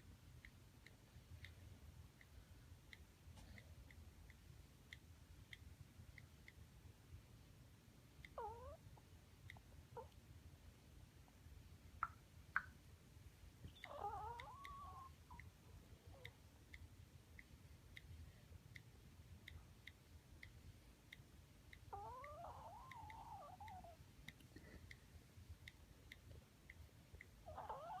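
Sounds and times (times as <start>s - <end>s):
faint even ticking: 13.6s - 28.0s.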